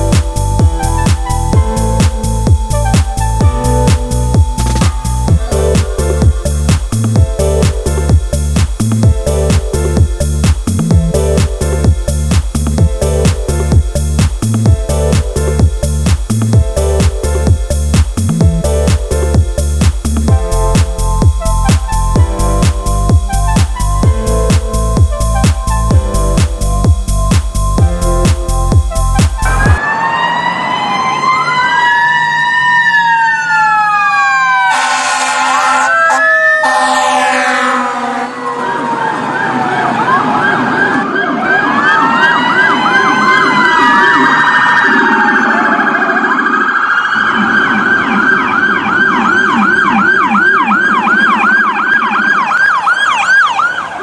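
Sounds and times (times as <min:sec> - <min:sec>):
emergency vehicle siren wailing: 0:00.0 - 0:08.6, 0:20.4 - 0:54.0.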